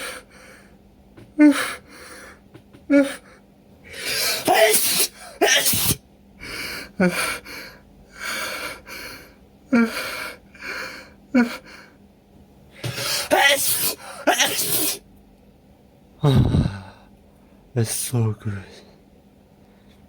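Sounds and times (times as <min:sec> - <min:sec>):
person sneezing: 0:04.0 - 0:06.0, 0:12.8 - 0:15.0.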